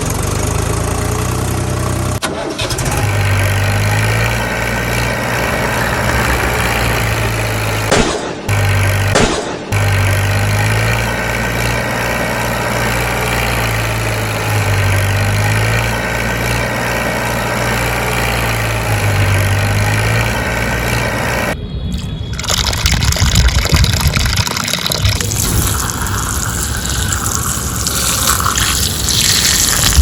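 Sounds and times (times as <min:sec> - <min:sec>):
engine idling: 0:00.0 - 0:21.6
water gushing and splashing: 0:22.3 - 0:30.0.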